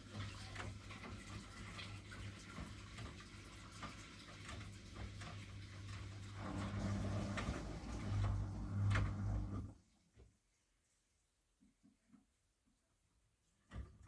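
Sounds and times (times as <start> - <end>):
faint irregular ticks and patters: 0.0 - 6.3
washing machine running hum: 0.0 - 9.8.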